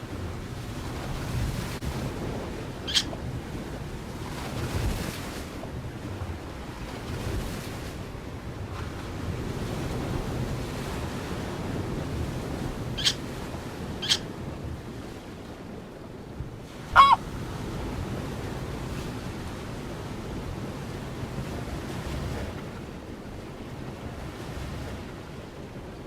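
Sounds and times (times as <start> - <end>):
bird calling: 2.9 - 3.1, 13.0 - 13.2, 14.0 - 14.2, 17.0 - 17.2.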